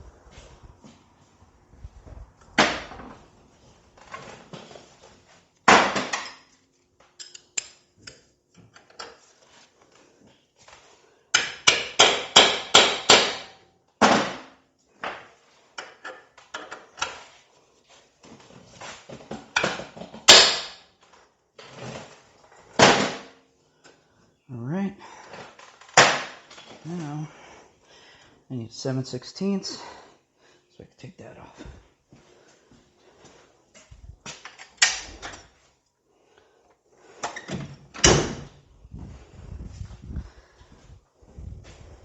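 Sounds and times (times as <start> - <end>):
hammer striking metal driver: 11.4 - 13.6.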